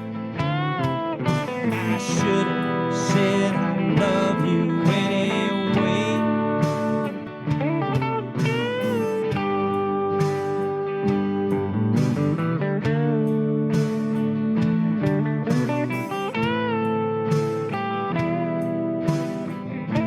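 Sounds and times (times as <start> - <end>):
country guitar instrumental: 0.0 - 20.0.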